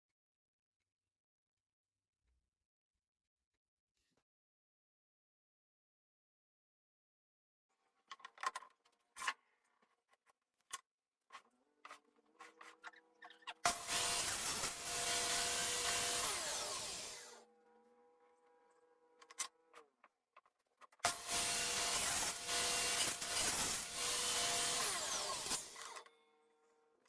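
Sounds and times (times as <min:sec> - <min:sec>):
table saw cutting wood: 0:12.3 - 0:19.8, 0:21.0 - 0:26.1.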